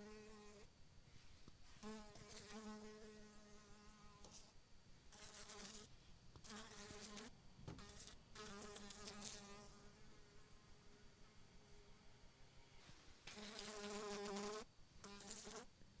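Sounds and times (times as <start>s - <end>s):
fly buzzing in flight: 1.8s - 4.5s, 5.1s - 10.6s, 13.3s - 15.7s.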